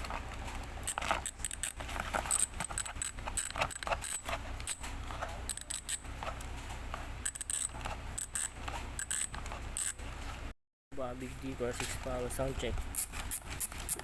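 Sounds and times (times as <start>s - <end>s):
bicycle hub ratchet clicking: 0.8s - 4.8s, 5.5s - 6.0s, 7.2s - 10.0s, 12.9s - 14.0s.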